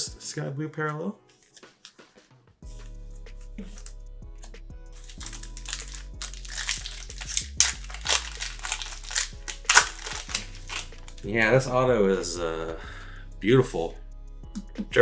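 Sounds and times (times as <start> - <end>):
foil wrapper crinkling: 5.0 - 11.2.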